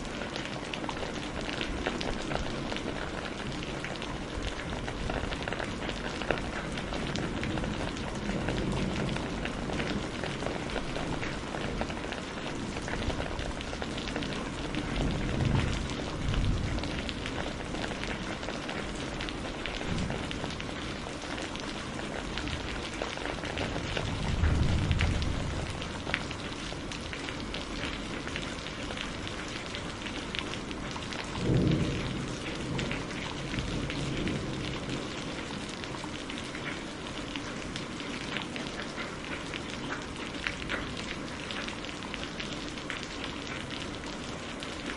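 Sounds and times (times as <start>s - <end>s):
heavy rain: 0.0s - 44.9s
thunder rumbling: 1.1s - 28.5s, 30.6s - 35.6s.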